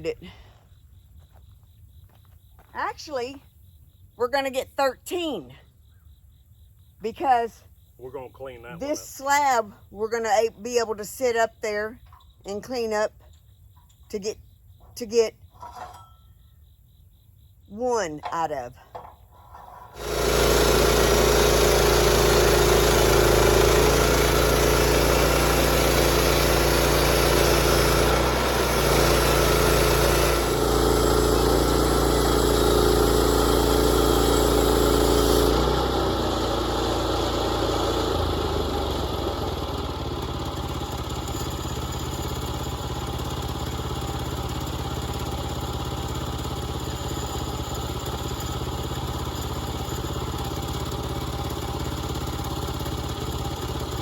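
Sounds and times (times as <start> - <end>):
band sawmill engine running: 8.0 - 11.9, 19.4 - 54.0
saw blade cutting log: 19.6 - 38.9.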